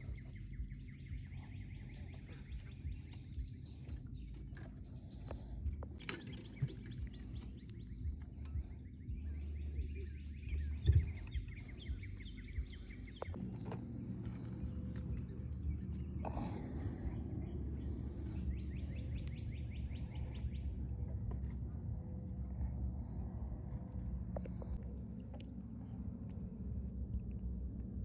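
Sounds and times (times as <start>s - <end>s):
low steady rumble: 0.0s - 28.0s
small birds chirping: 0.0s - 28.0s.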